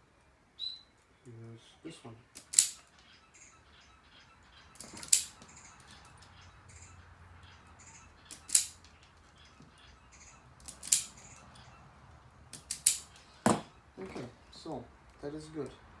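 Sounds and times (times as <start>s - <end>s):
wire stripper jaws clicking: 2.3s - 2.8s, 4.8s - 5.4s, 8.3s - 8.8s, 10.6s - 11.2s, 12.5s - 13.2s
wire stripper snipping: 2.4s - 2.8s, 4.8s - 5.4s, 8.3s - 8.8s, 10.6s - 11.2s, 12.5s - 13.6s.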